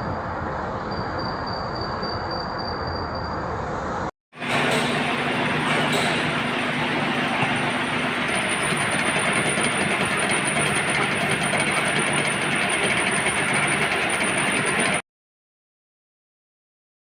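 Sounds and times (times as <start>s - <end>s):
thin high whine: 0.0s - 15.0s
lathe running: 4.4s - 15.0s.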